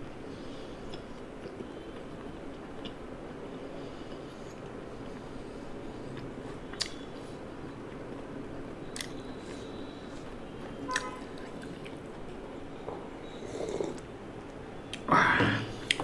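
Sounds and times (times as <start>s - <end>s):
person chewing quietly: 0.0s - 16.0s.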